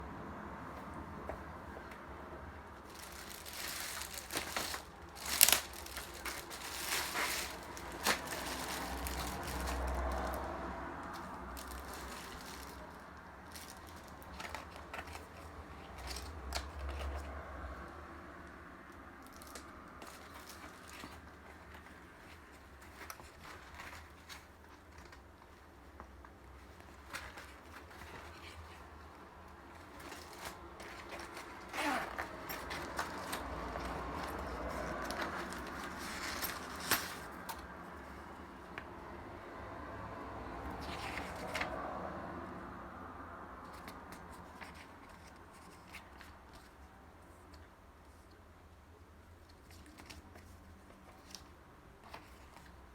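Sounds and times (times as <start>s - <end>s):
packaging crinkling and tearing: 2.8s - 17.1s.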